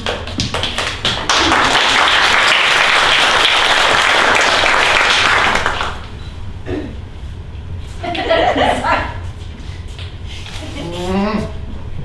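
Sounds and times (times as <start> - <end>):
audience applauding: 0.0 - 6.1.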